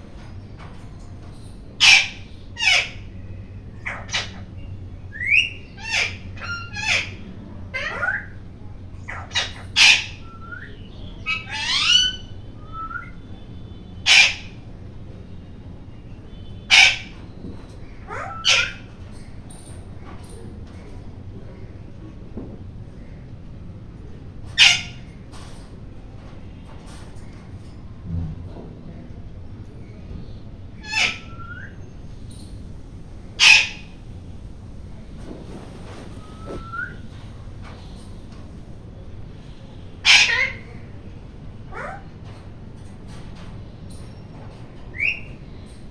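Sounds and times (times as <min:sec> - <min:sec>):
parakeet squawking: 0:01.8 - 0:03.2, 0:03.8 - 0:04.6, 0:05.2 - 0:08.4, 0:09.0 - 0:13.1, 0:14.1 - 0:14.6, 0:16.7 - 0:17.2, 0:18.0 - 0:18.9, 0:24.6 - 0:25.0, 0:30.8 - 0:32.6, 0:33.4 - 0:34.0, 0:40.0 - 0:40.8, 0:41.7 - 0:42.0
parakeet chirps and whistles: 0:36.0 - 0:37.2.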